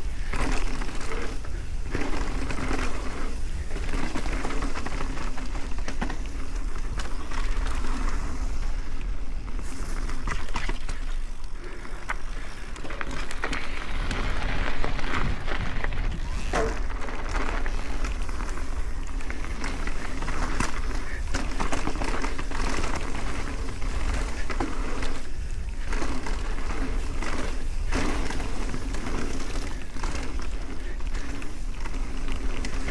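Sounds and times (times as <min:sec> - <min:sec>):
bike rattles and clicks: 0:00.0 - 0:32.9
bike tyres on dirt and gravel: 0:00.0 - 0:32.9
wind rumble on microphone: 0:13.3 - 0:32.9.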